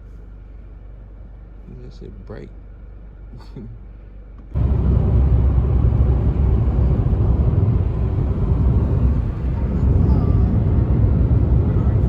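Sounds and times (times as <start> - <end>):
car travelling on road: 4.4 - 12.0.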